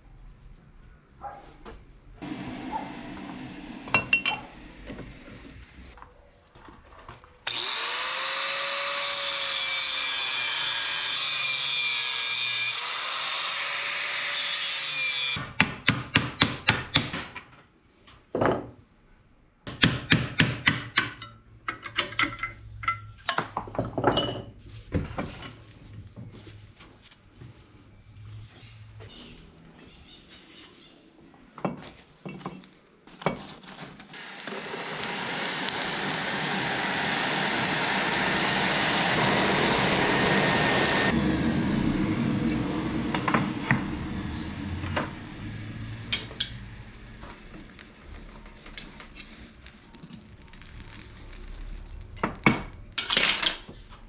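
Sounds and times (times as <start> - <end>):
power tool running: 2.2 - 6.0, 7.5 - 15.4, 34.1 - 48.0.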